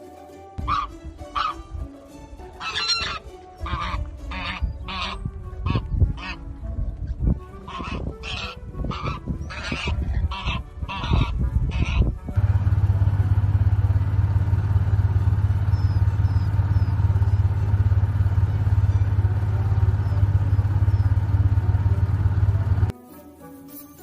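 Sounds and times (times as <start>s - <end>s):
engine droning: 12.3s - 22.9s.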